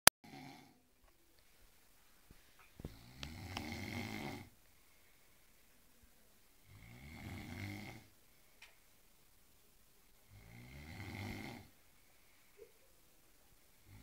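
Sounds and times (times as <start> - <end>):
person snoring: 0.3 - 0.8, 2.9 - 4.5, 6.6 - 8.1, 10.2 - 11.8
faint clicks: 8.6 - 8.9.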